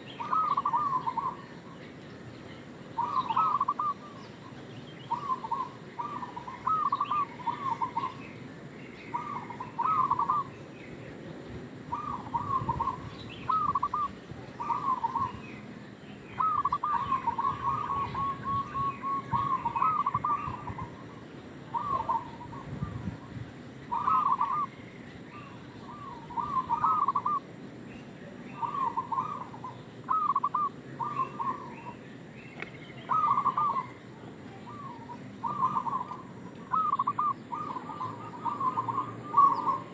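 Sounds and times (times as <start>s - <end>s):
dove cooing in staccato notes: 0.0s - 1.4s, 3.0s - 4.2s, 5.1s - 8.2s, 9.1s - 10.5s, 11.9s - 15.4s, 16.4s - 22.9s, 23.9s - 24.7s, 25.4s - 27.5s, 28.6s - 32.0s, 33.0s - 34.1s, 34.7s - 39.9s.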